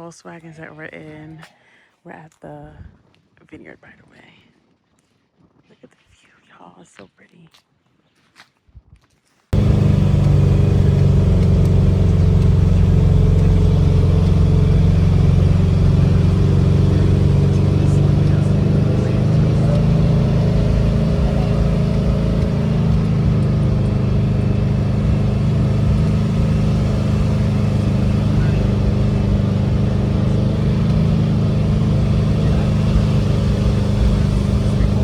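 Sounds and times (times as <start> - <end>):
car engine running: 9.6 - 35.0.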